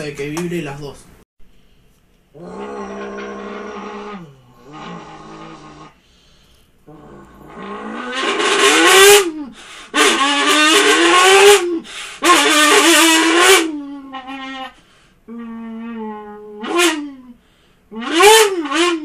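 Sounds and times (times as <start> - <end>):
voice buzzing through crushed can: 2.4 - 6.0, 6.9 - 17.2, 17.9 - 19.0.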